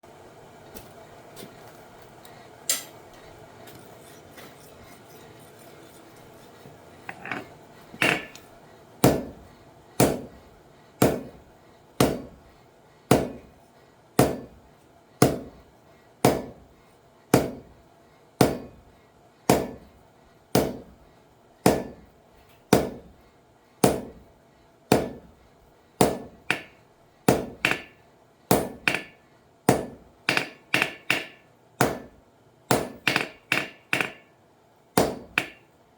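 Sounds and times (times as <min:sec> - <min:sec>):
faint steady hum: 0:00.0 - 0:35.9
hammer blows on an anvil: 0:02.7 - 0:03.0.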